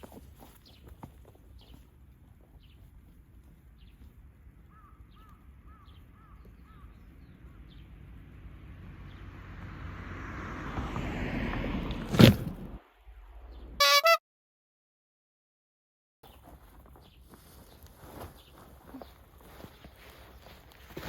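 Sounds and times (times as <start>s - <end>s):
arched bird calls: 4.7s - 7.9s.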